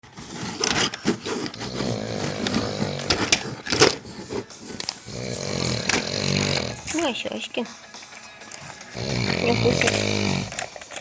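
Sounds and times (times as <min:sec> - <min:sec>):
man snoring: 0:01.5 - 0:07.0, 0:08.9 - 0:10.8.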